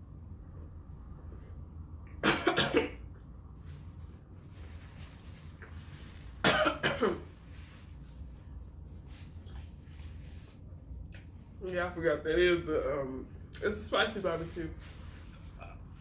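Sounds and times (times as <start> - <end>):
person coughing: 2.2 - 3.0, 6.4 - 7.3.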